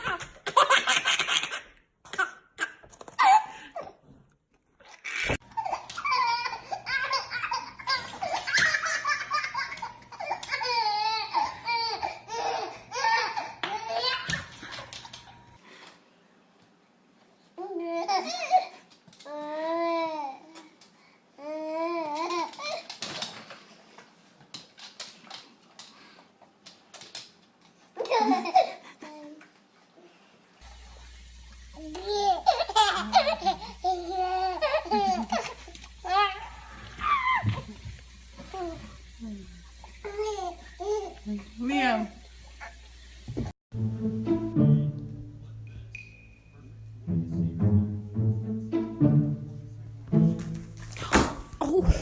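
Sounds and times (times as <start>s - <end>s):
baby laughing: 0.0s - 4.0s, 4.8s - 15.1s, 28.0s - 29.4s, 31.9s - 37.7s.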